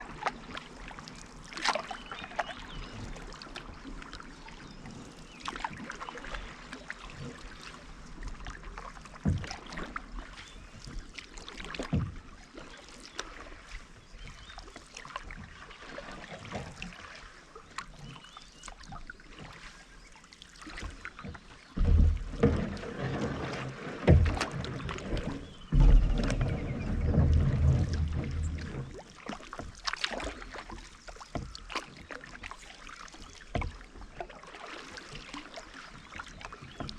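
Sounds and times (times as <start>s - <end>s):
paddle strokes splashing water: 0.0s - 36.9s
paddle knocking against canoe: 5.4s - 17.0s, 20.5s - 36.9s
low thumps: 21.8s - 22.8s, 24.0s - 29.0s.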